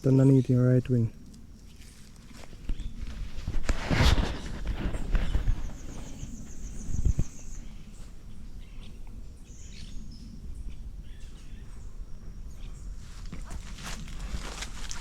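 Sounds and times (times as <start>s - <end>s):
low rustle: 1.2s - 8.5s, 12.3s - 15.0s
faint bird chirps: 4.9s - 14.4s.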